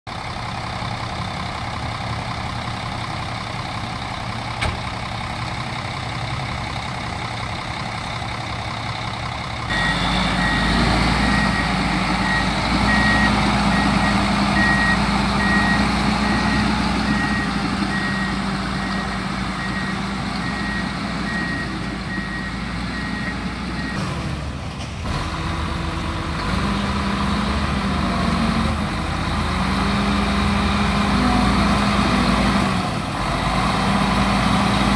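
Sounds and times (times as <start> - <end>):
heavy vehicle engine running: 0.1 - 34.9
reversing alarm beeping: 9.7 - 24.0.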